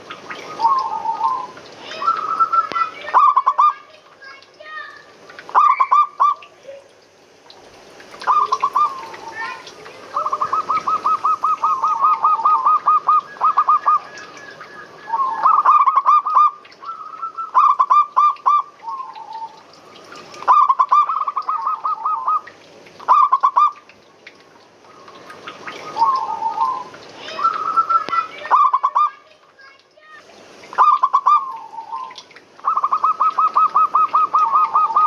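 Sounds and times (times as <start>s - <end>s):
doves cooing: 0.2s - 3.8s, 8.1s - 23.8s, 24.8s - 29.1s, 30.8s - 35.0s.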